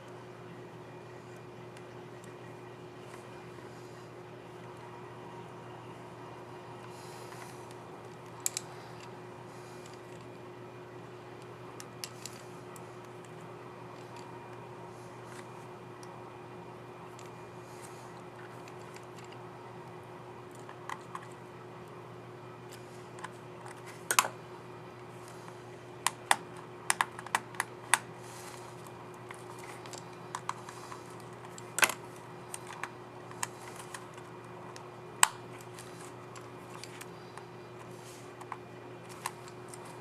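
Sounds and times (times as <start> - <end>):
faint steady hum: 0.0 - 40.0
laptop keys clicking: 26.0 - 37.5.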